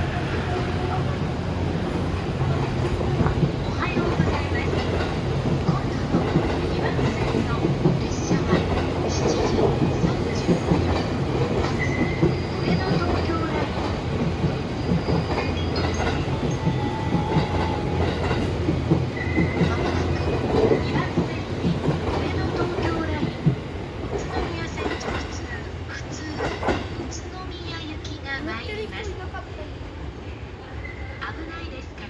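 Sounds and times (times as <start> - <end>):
train rail rumble: 0.0 - 29.5
clacks over rail joints: 2.6 - 25.4, 26.4 - 27.0.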